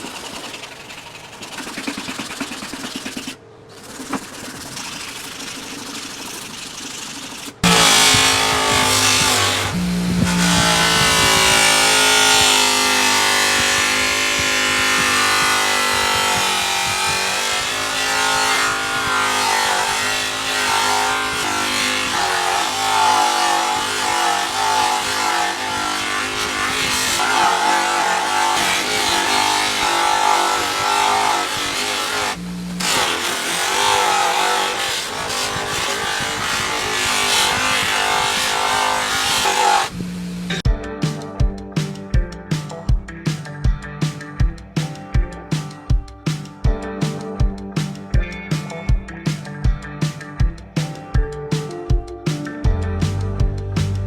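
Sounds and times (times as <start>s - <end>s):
background music: 7.6s - 26.2s, 40.5s - 54.0s.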